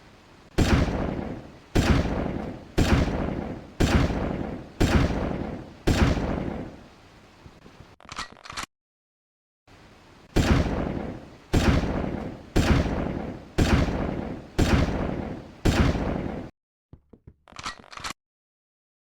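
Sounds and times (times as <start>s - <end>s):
shotgun blasts: 0.6s - 6.9s, 10.4s - 16.5s.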